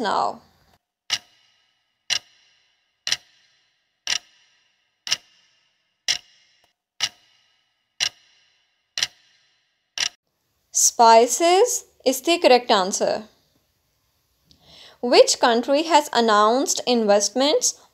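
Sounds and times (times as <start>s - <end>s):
clock ticking: 1.1s - 9.4s, 10.0s - 10.2s.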